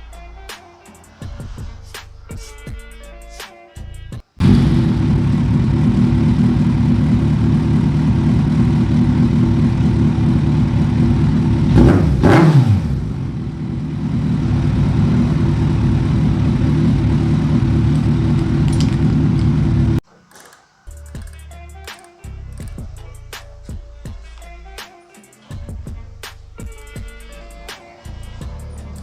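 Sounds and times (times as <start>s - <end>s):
motorcycle engine idling: 4.4s - 20.0s.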